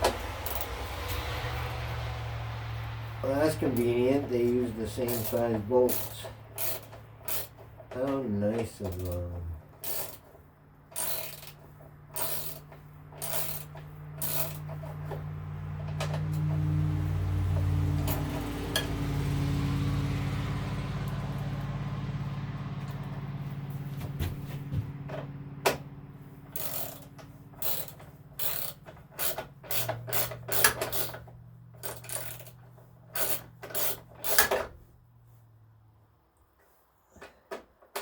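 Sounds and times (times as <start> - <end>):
socket ratchet clicking: 5.1 - 7.6, 9.8 - 10.2, 10.9 - 15.1, 26.5 - 31.2.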